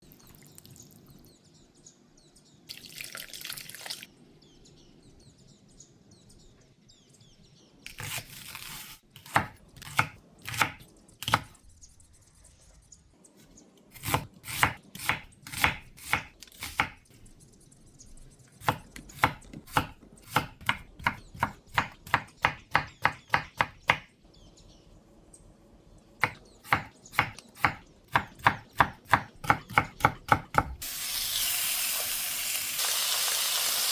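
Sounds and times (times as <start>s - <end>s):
knife chopping on cutting board: 7.9s - 11.5s, 13.9s - 17.0s, 18.6s - 24.1s, 26.2s - 30.8s.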